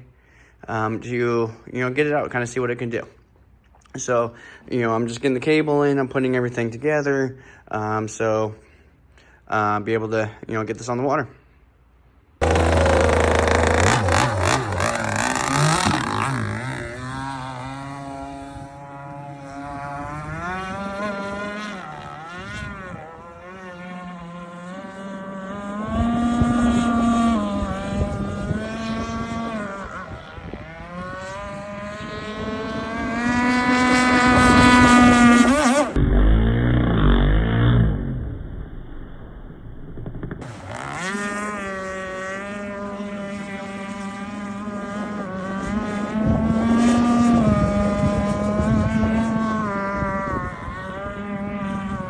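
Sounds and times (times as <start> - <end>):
racing boat engine running: 12.4 - 38.7, 39.9 - 52.0.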